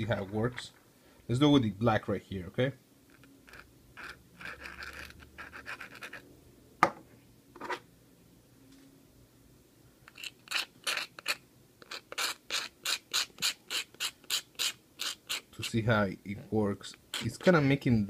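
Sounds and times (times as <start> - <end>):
scratchy rubbing strokes: 3.1 - 6.3, 10.1 - 16.5, 17.1 - 17.6.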